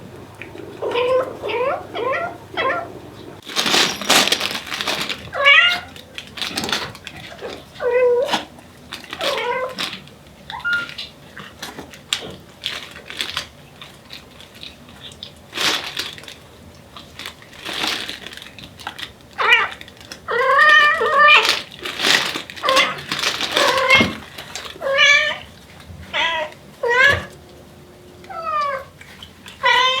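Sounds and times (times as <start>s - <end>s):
cat meowing and chirping: 0.8s - 2.9s, 10.5s - 11.0s, 26.1s - 27.3s, 28.3s - 28.9s, 29.6s - 30.0s.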